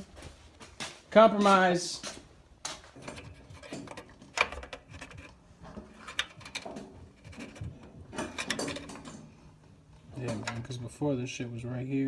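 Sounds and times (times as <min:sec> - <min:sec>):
wrench clicking and scraping metal: 0:03.0 - 0:09.4.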